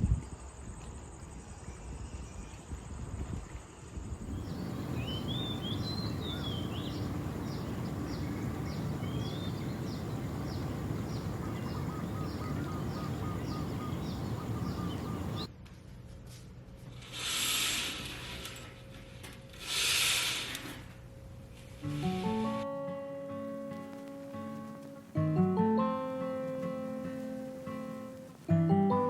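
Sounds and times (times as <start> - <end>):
low background rumble: 4.2 - 15.5
bird high falling call: 4.3 - 15.5
bird warbling song: 4.3 - 15.5.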